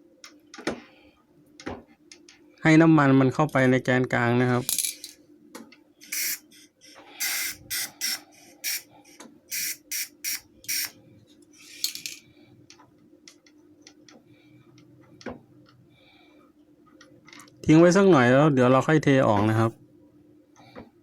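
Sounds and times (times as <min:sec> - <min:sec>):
aerosol can spraying: 0:06.1 - 0:06.4, 0:07.2 - 0:08.9, 0:09.5 - 0:10.9.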